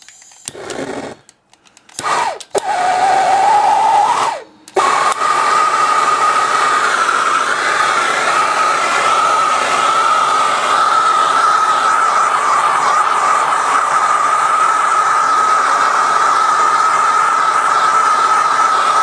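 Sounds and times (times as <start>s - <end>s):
torch ignition click: 0.0s - 2.8s
gas torch flame hissing: 0.1s - 19.0s.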